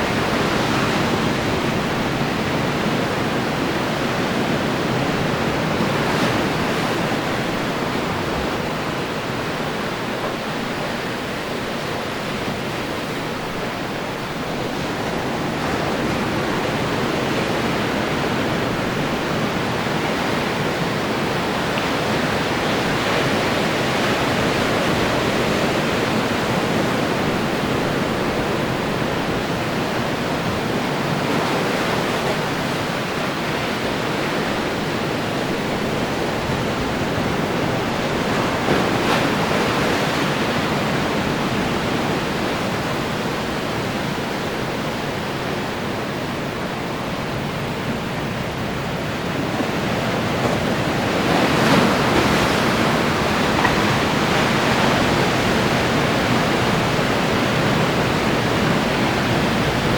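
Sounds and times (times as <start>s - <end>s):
ocean surf washing on shore: 0.0s - 59.9s
wave breaking: 20.4s - 45.4s, 46.2s - 59.9s.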